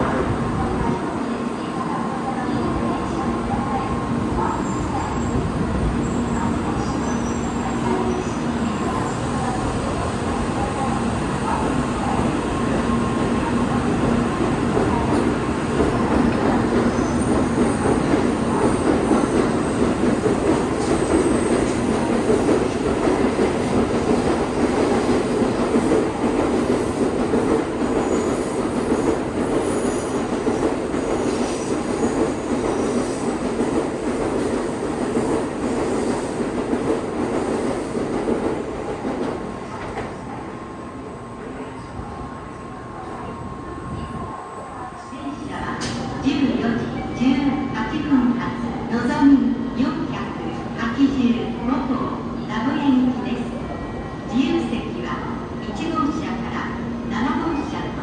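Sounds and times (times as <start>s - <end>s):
train wheel rush: 0.0s - 58.0s.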